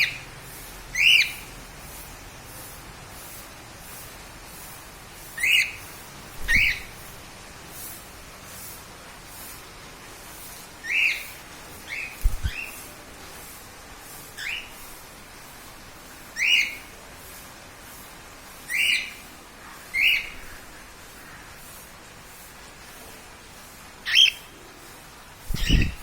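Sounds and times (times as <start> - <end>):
bird chirping: 0.0 - 0.3, 0.9 - 1.5, 5.3 - 7.0, 10.8 - 12.8, 14.4 - 14.8, 16.3 - 16.9, 18.7 - 19.3, 19.9 - 20.6, 24.0 - 24.5, 25.5 - 26.0.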